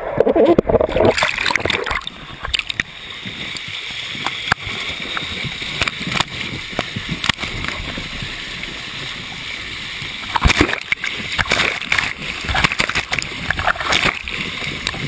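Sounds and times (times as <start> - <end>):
churning water rushing: 0.0 - 15.0
small splashes and knocks: 10.2 - 15.0.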